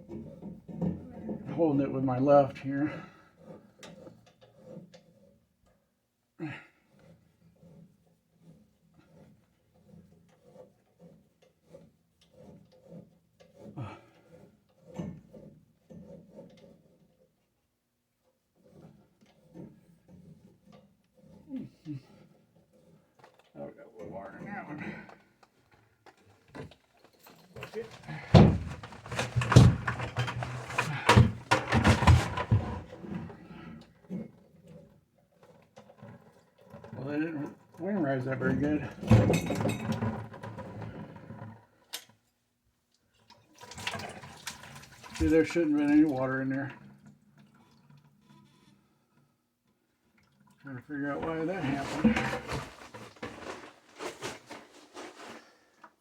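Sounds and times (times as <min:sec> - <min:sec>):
pipe being cut by hand: 0:03.3 - 0:05.5, 0:06.8 - 0:17.2, 0:18.6 - 0:23.2
knocks and clanks on copper pipe: 0:39.0 - 0:40.0.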